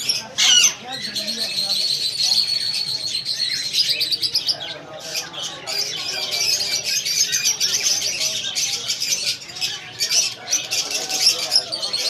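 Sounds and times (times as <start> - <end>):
parrots chirping and squawking: 0.0 - 12.0.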